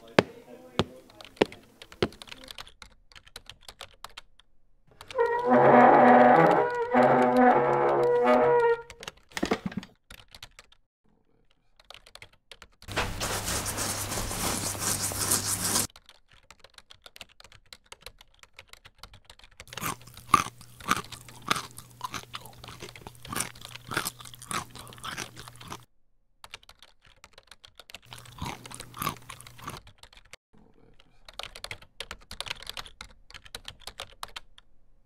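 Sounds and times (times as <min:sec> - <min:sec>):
sharp irregular crunches: 0:19.7 - 0:25.8, 0:28.1 - 0:29.8.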